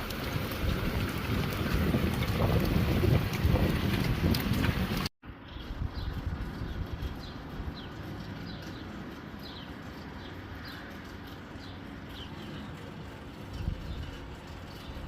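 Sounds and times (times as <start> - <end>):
rain hissing: 0.0 - 5.1
small bird chirping: 5.4 - 13.0.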